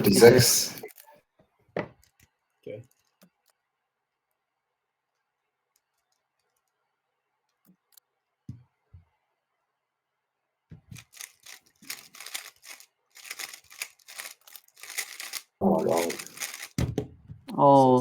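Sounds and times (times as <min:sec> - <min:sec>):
puzzle cube turning clicks: 0:11.0 - 0:16.8.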